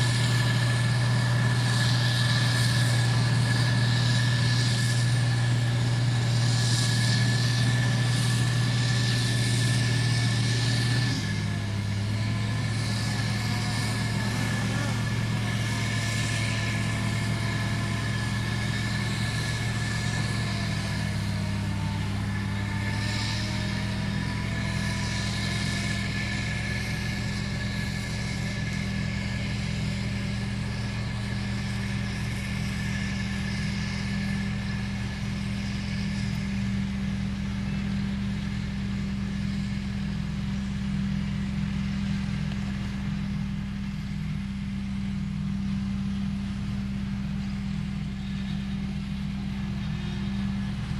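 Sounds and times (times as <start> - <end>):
heavy diesel engine running: 0.0 - 50.9.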